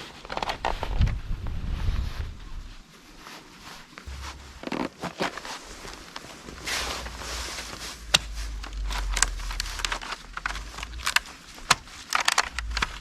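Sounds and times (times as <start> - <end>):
bamboo strips clacking: 6.4 - 13.0.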